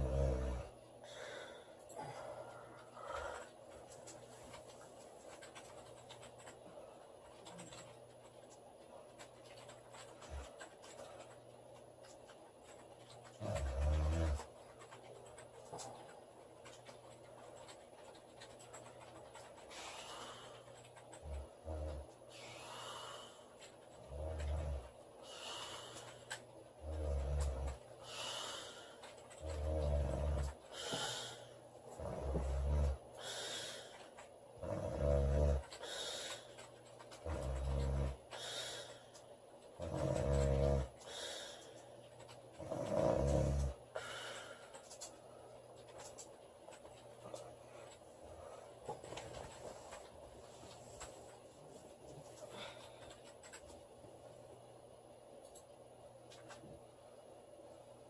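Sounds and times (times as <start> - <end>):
woman snoring: 0.0 - 1.4, 26.8 - 31.4, 32.0 - 33.8, 34.6 - 35.7, 39.8 - 41.3, 42.6 - 44.2
breathy out-breath: 1.0 - 3.6, 44.0 - 44.8.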